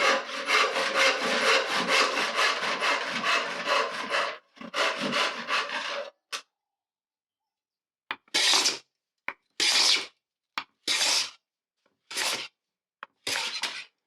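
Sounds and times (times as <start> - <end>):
hand plane rasping on wood: 0.0 - 6.1.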